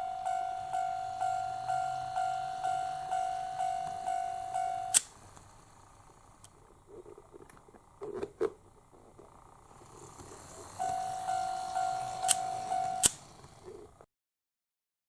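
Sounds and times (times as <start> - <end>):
level crossing warning bell: 0.0 - 5.0, 10.8 - 13.1.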